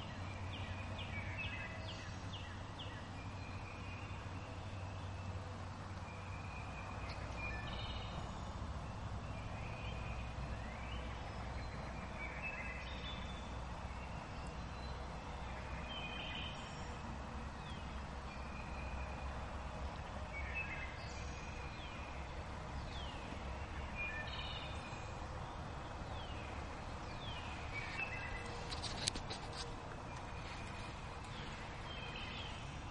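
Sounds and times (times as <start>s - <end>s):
birds chirping and whistling: 26.2s - 32.7s.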